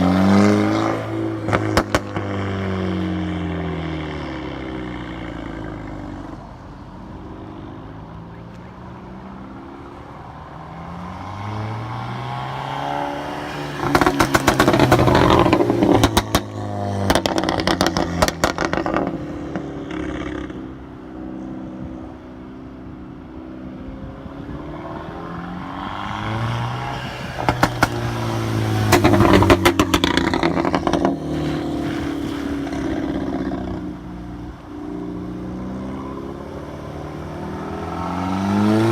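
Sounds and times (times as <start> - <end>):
car engine revving: 8.5 - 22.0, 22.6 - 38.9
exhaust crackles and pops: 13.8 - 20.6, 27.4 - 28.1, 28.9 - 33.8.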